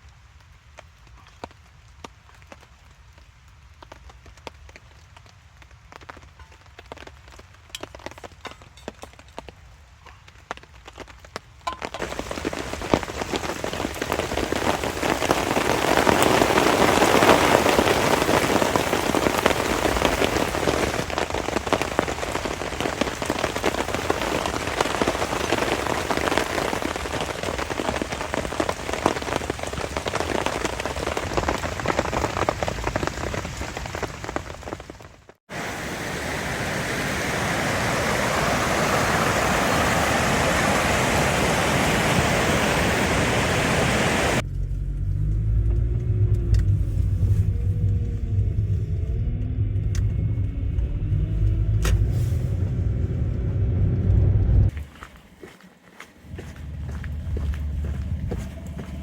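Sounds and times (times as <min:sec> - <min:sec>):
heavy rain falling: 0:10.3 - 0:44.4, 0:56.4 - 0:59.0
smooth steady rushing: 0:35.5 - 0:44.4.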